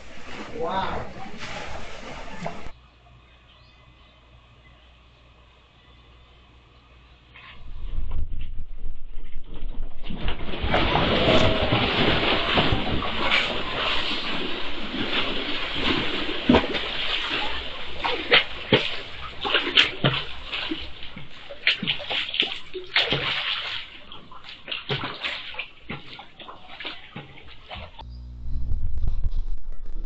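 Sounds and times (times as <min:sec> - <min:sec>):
water sloshing and splashing: 0:00.0 - 0:02.8, 0:07.5 - 0:28.0.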